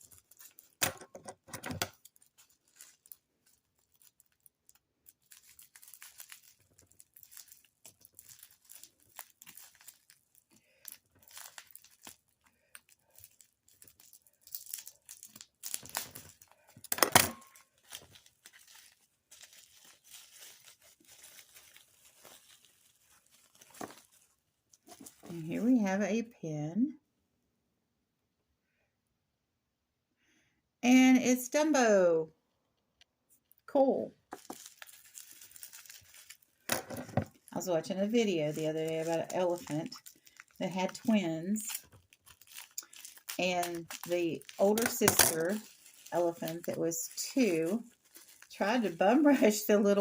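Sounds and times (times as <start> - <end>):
packaging tearing: 0.0 - 0.8, 1.8 - 25.4, 34.3 - 36.7, 37.3 - 50.0
packaging crinkling and rustling: 0.0 - 25.7, 34.2 - 50.0.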